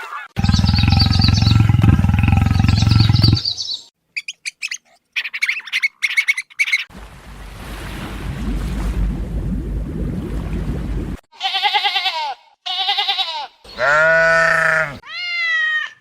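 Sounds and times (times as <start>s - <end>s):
low pulsing animal call: 0.4s - 3.6s.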